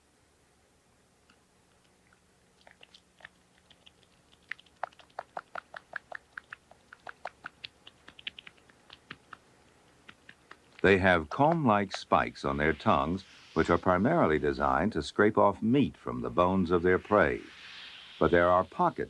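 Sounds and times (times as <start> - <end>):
cat lapping milk: 1.7 - 9.4.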